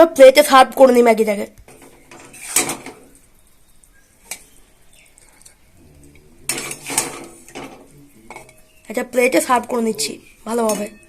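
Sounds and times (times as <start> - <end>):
spoon scraping a pan: 1.7 - 3.3, 3.9 - 11.0
spoon clinking on a plate: 6.5 - 8.8, 10.5 - 11.0.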